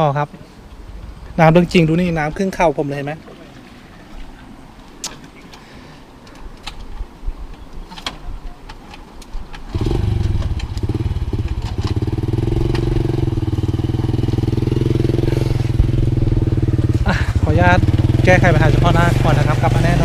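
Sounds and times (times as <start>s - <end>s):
motorcycle engine idling: 9.7s - 20.0s.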